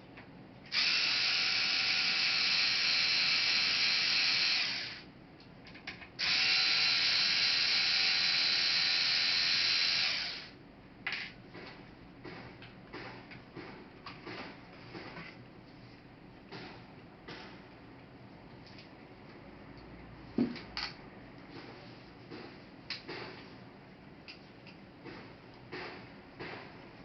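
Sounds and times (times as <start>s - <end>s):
electric screwdriver running: 0.7s - 5.0s, 6.2s - 10.5s.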